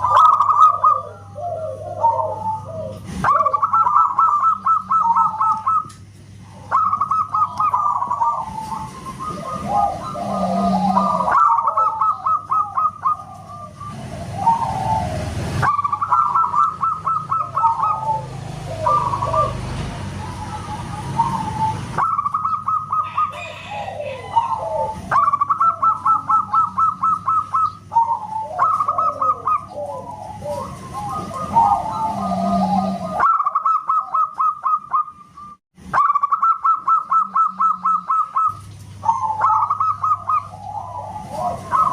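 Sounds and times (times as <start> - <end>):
doves cooing: 0.0 - 41.9.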